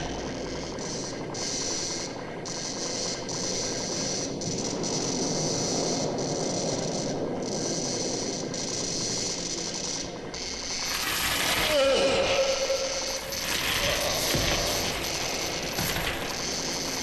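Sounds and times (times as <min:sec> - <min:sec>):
electrical crackling and rattling: 0:00.0 - 0:17.0
hissing: 0:10.8 - 0:17.0.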